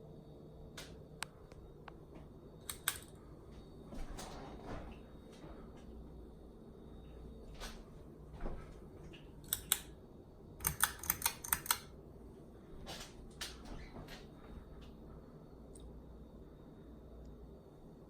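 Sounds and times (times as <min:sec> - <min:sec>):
low steady hum: 0:00.0 - 0:18.0
sharp mechanical clicks: 0:02.6 - 0:03.2, 0:09.4 - 0:09.9, 0:10.6 - 0:11.9.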